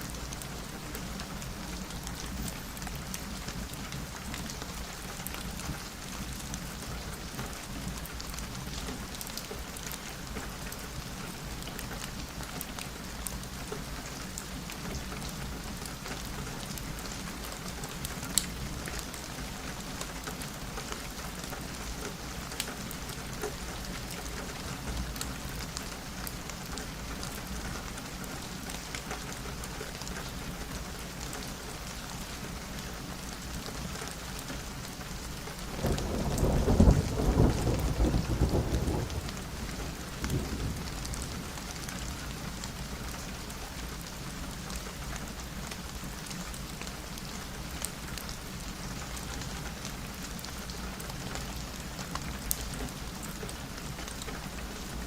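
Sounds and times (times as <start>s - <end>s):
steady rain falling: 0.0s - 55.0s
thunder rumbling: 35.7s - 41.6s.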